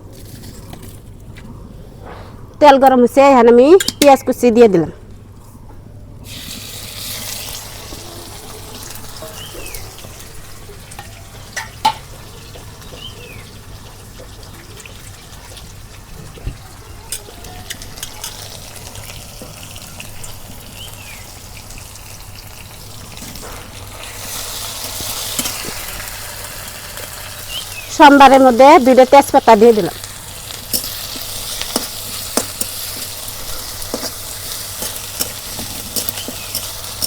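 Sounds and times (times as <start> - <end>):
onions sizzling in hot oil: 6.2 - 37.0
utensil clicking against pan: 30.7 - 37.0.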